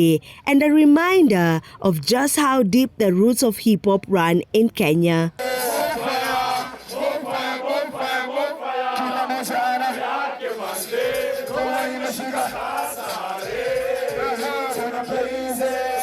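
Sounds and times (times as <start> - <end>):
crowd chanting: 5.4 - 16.0
hip-hop music: 5.4 - 16.0.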